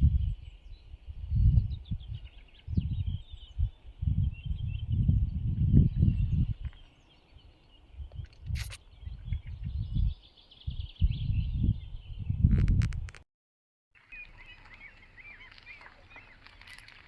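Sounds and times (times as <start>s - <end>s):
small birds chirping: 0.0s - 12.9s, 14.0s - 17.0s
wind buffeting microphone: 0.0s - 13.2s.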